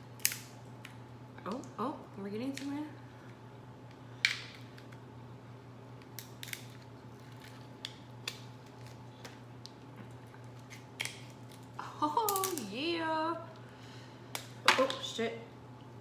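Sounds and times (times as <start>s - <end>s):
steady low hum: 0.0s - 16.0s
scissors cracking crab shell: 0.2s - 1.7s, 6.0s - 9.8s, 10.4s - 12.7s.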